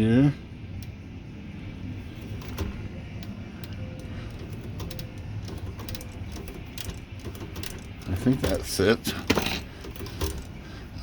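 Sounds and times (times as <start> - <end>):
typewriter mechanism clicking: 4.4 - 10.5.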